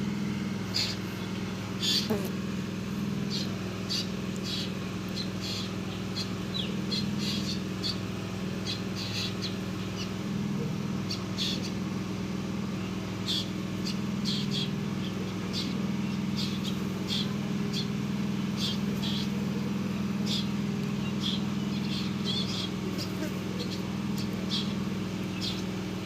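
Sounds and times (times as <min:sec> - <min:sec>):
steady low hum: 0:00.0 - 0:26.0
birds chirping: 0:00.4 - 0:02.3, 0:03.1 - 0:10.3, 0:11.0 - 0:26.0.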